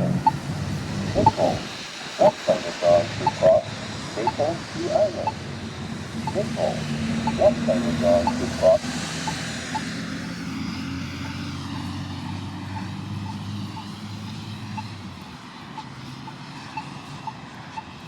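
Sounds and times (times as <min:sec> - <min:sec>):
passing vehicle engine hum: 0:00.0 - 0:18.0
crossing button locator ticks: 0:01.1 - 0:01.6, 0:06.2 - 0:09.9.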